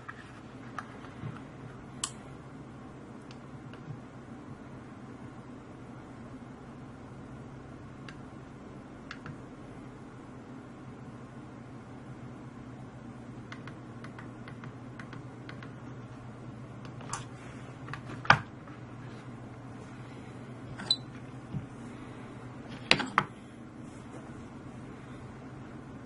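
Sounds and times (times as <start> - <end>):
steady low hum: 0.0 - 26.0
small clicks and taps: 9.1 - 9.4, 13.5 - 15.8.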